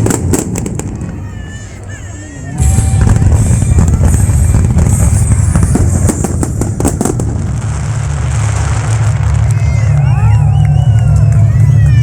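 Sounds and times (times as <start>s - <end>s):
fireworks bangs and crackles: 0.0s - 12.0s
low rumble of fireworks: 0.0s - 12.0s.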